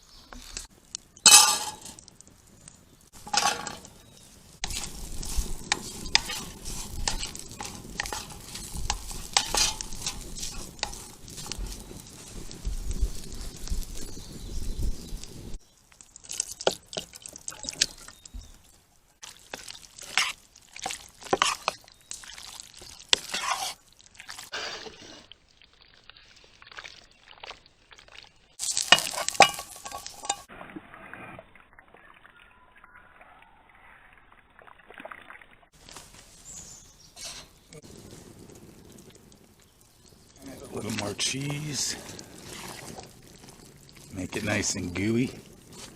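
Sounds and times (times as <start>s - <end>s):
utensil stirring sauce in pot: 0.5s - 14.5s, 15.6s - 30.5s, 38.6s - 45.9s.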